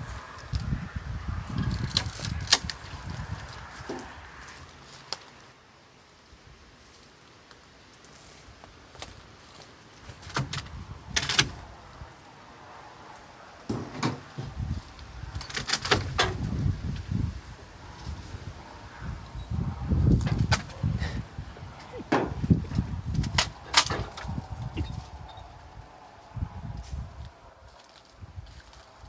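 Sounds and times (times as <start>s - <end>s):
knocks and clunks: 13.7s - 14.8s, 20.1s - 25.1s.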